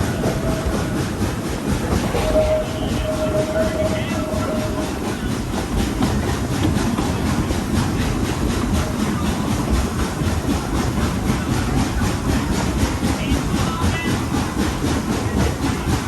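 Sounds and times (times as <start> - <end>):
faint high tone: 0.0 - 5.5
train wheels rumbling on track: 0.0 - 16.0.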